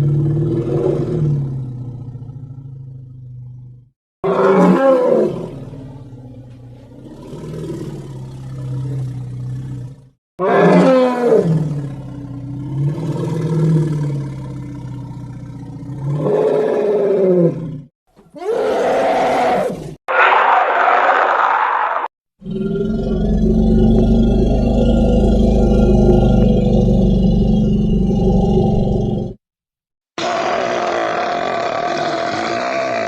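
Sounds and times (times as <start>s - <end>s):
animal-like roars: 6.9s - 29.4s, 30.2s - 33.0s.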